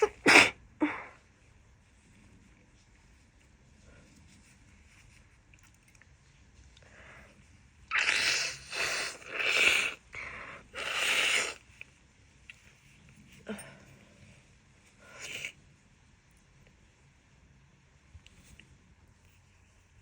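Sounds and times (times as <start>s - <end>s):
woman blowing her nose: 0.0s - 1.1s, 7.9s - 11.6s.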